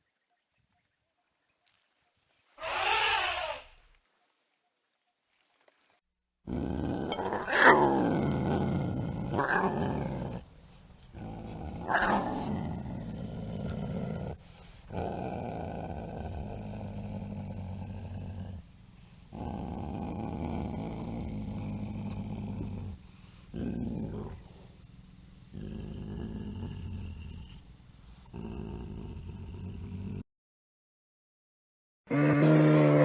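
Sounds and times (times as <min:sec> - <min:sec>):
animal calls falling in pitch: 0:02.6 - 0:03.9
large animal growling: 0:06.5 - 0:24.8, 0:25.5 - 0:30.2.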